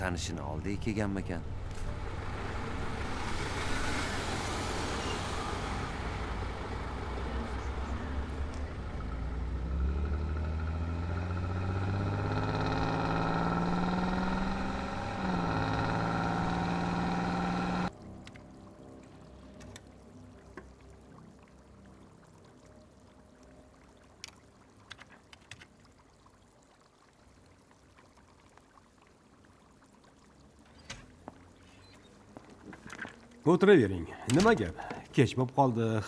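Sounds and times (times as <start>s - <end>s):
car engine accelerating: 1.4s - 17.9s.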